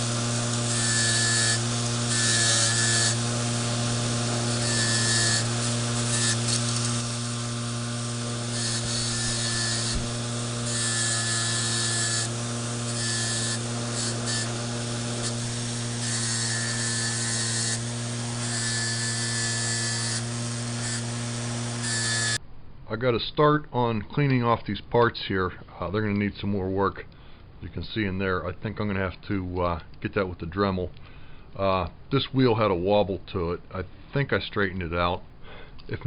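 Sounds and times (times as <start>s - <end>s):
bench grinder motor hum: 0.0s - 22.4s
wire wheel brushing metal: 0.0s - 22.4s.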